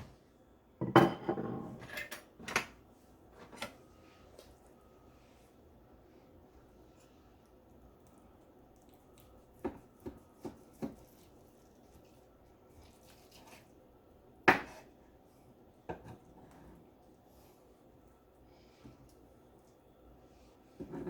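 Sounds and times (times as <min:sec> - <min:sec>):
knife cutting chicken: 0:09.6 - 0:13.7.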